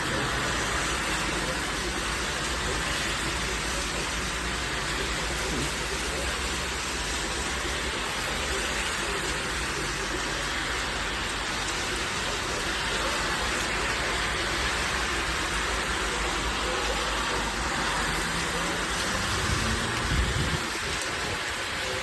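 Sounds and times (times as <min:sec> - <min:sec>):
heavy rain falling: 0:00.0 - 0:22.0.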